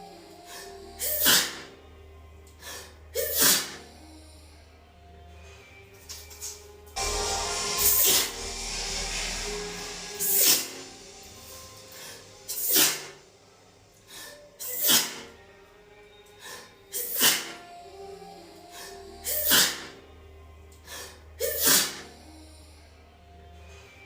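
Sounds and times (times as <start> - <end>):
soft music: 0.0 - 24.0
woman sneezing: 1.0 - 1.7, 3.2 - 3.8, 14.6 - 15.3, 16.9 - 17.6, 19.2 - 19.9, 21.0 - 22.1.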